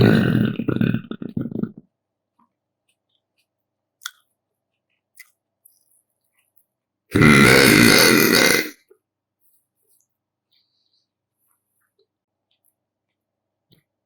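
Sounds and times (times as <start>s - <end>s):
person burping: 0.0s - 1.8s, 7.1s - 8.8s.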